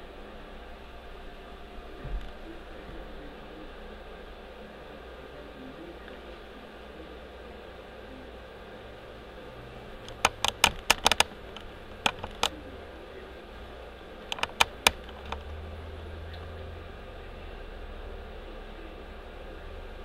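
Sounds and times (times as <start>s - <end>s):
steady low hum: 0.0s - 20.0s
sharp clicks: 10.0s - 12.6s, 14.3s - 15.6s.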